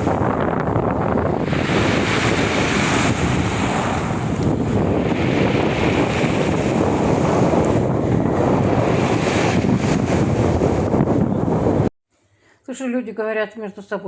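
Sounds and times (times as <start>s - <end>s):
surf breaking on shore: 0.0s - 11.9s
wind buffeting microphone: 0.0s - 11.9s.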